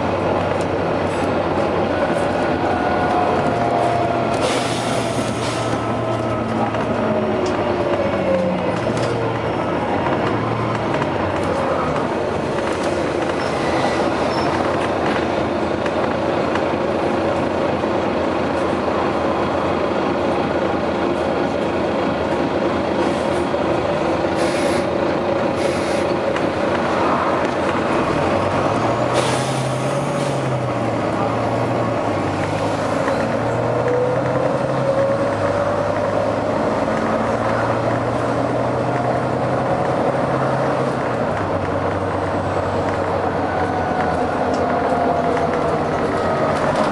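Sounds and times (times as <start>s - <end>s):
bus engine running under load: 0.0s - 46.9s
air brake hiss: 4.4s - 5.7s, 24.4s - 24.9s, 25.6s - 26.1s.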